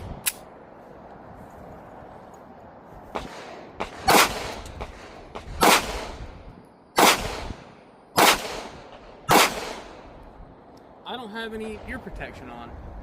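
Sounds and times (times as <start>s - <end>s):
pistol shots with echo: 3.2s - 6.2s, 7.0s - 10.0s.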